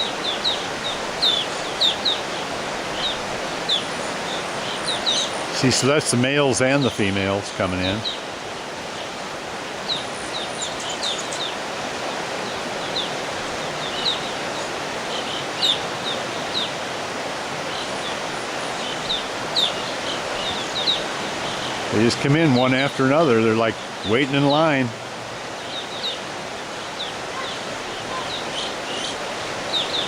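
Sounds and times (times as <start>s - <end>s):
birds chirping: 0.0s - 30.0s.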